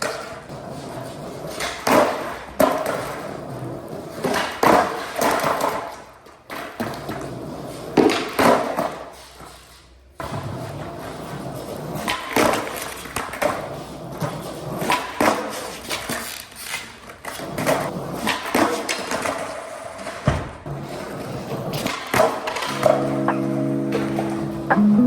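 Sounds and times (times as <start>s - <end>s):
skateboard clacks and knocks: 0.0s - 23.5s
skateboard rolling: 0.0s - 24.6s.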